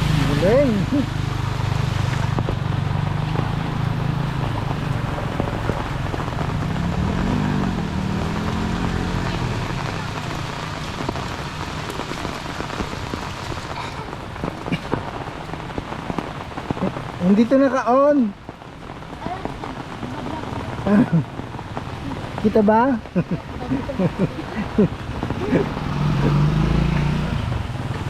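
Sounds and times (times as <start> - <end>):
low vehicle engine running: 0.0 - 14.4
heavy rain falling: 0.0 - 28.0.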